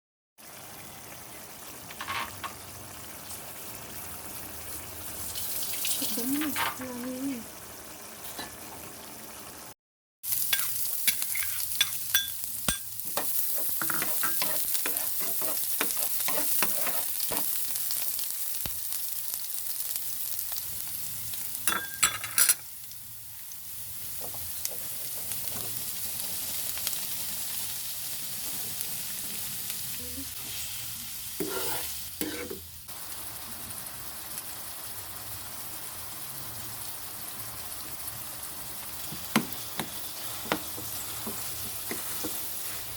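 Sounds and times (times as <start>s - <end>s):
food sizzling in a pan: 0.4s - 42.9s
utensil scraping against pan: 10.6s - 12.0s, 13.1s - 17.5s, 31.4s - 32.6s.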